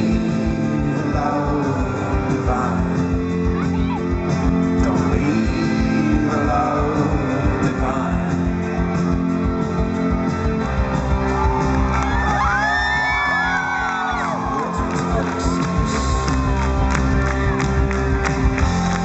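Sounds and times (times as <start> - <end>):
live folk-rock band playing: 0.0 - 12.8.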